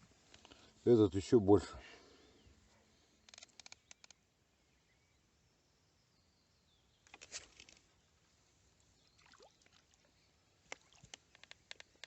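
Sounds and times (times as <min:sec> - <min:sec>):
faint rustle: 0:07.0 - 0:09.0
small water splashes: 0:09.0 - 0:11.7.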